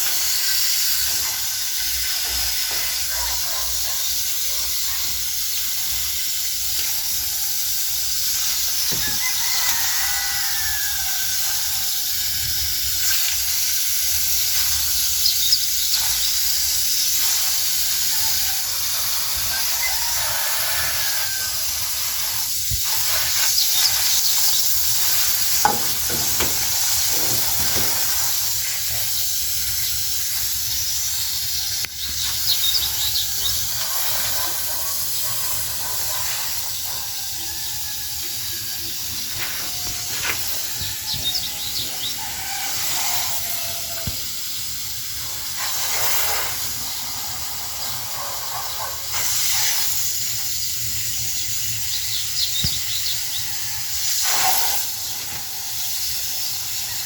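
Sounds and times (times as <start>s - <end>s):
water spraying from garden hose: 0.0s - 57.0s
bird calls: 31.7s - 34.5s, 39.7s - 43.7s.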